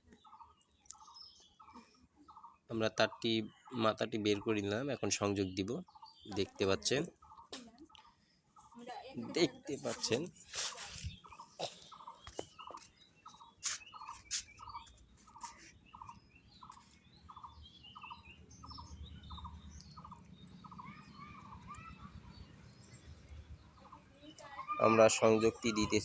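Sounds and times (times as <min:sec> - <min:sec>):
higher bird chirps: 0:00.0 - 0:26.0
bird buzzy calls: 0:08.6 - 0:22.5.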